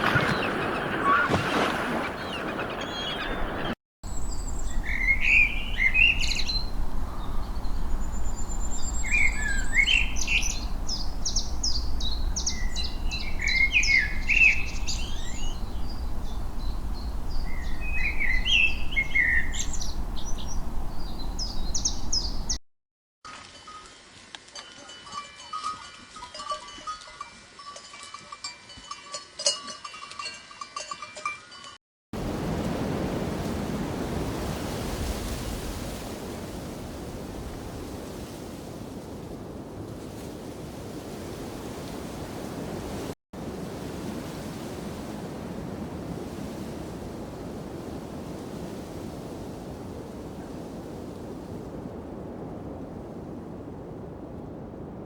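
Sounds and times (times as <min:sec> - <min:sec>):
songbird singing with trills: 0:02.8 - 0:22.6.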